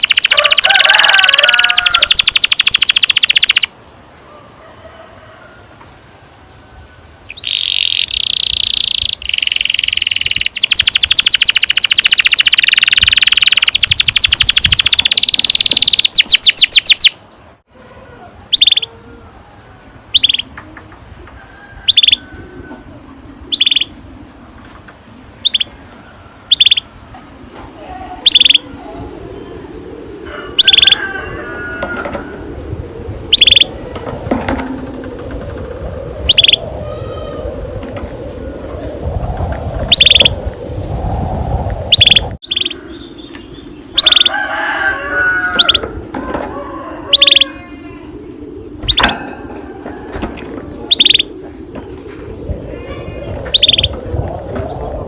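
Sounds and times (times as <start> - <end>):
canary chirping: 0.0 - 3.7, 7.3 - 17.2, 26.5 - 26.8, 48.8 - 49.4, 50.9 - 51.3
faint bird trills: 0.0 - 3.7, 7.3 - 17.2, 17.8 - 19.2, 20.1 - 20.5, 25.4 - 26.9, 28.0 - 29.7, 30.4 - 31.7, 33.3 - 34.0, 36.2 - 37.6, 47.0 - 54.1.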